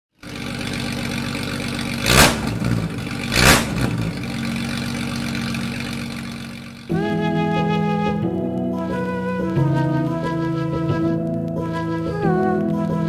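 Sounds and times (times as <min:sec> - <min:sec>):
vehicle engine running: 0:00.1 - 0:07.2
loud whooshes: 0:02.1 - 0:04.3.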